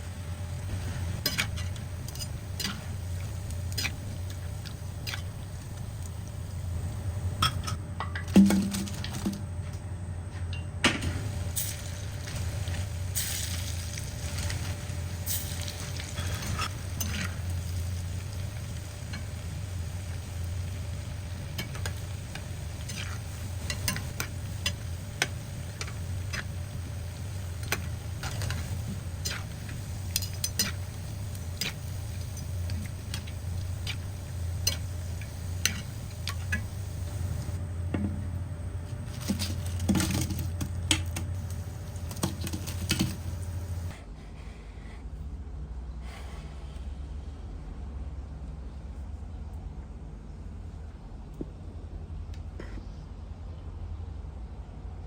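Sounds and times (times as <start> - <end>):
food sizzling in a pan: 0.0 - 7.7, 11.0 - 43.9
steady low hum: 0.0 - 55.0
metal spatula scraping a pan: 0.7 - 3.0.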